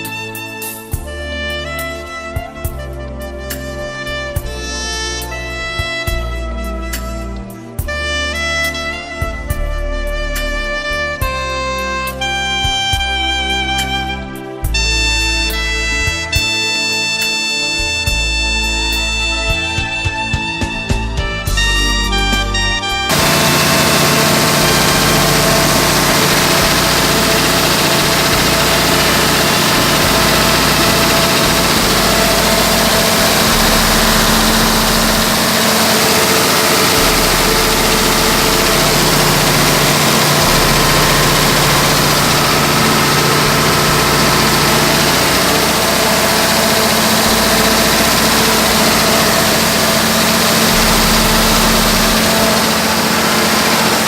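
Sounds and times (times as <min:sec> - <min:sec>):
diesel engine running: 0:23.1 - 0:54.0.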